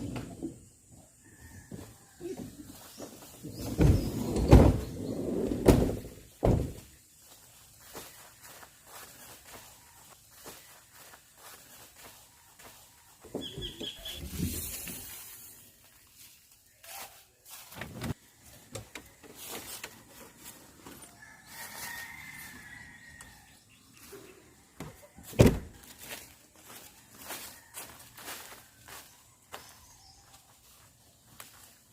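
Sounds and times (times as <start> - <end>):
distant rooster crowing: 0.9 - 2.8, 20.4 - 30.4.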